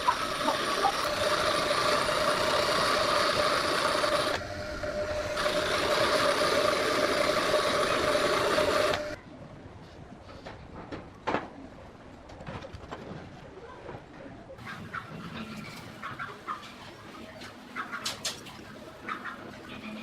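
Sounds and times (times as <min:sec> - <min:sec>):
small electric power tool running: 0:00.0 - 0:09.2.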